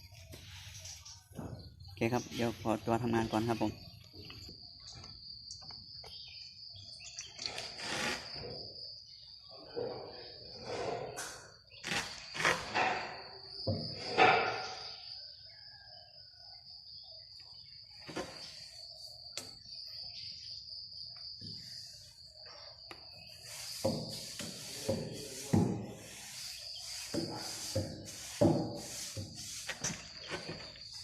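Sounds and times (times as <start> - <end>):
insects trilling: 0.0 - 31.0
knocks and scrapes: 9.6 - 15.0, 18.0 - 18.7, 21.4 - 31.0.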